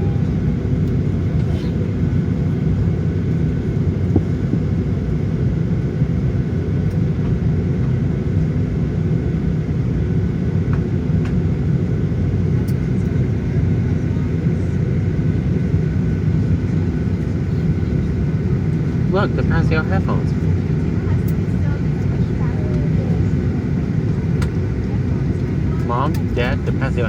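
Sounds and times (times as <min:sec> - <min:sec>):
cabin ventilation rumble and hum: 0:00.0 - 0:27.0.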